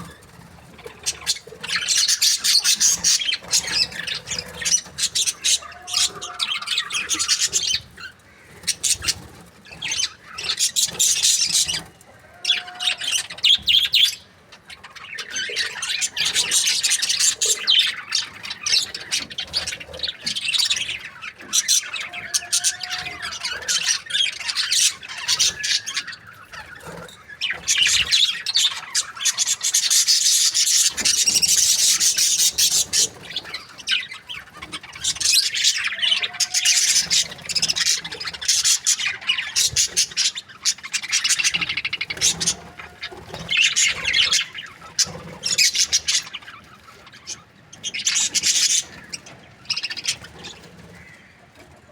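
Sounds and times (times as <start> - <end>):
budgerigar chattering and chirping: 1.0 - 7.9, 15.0 - 46.6.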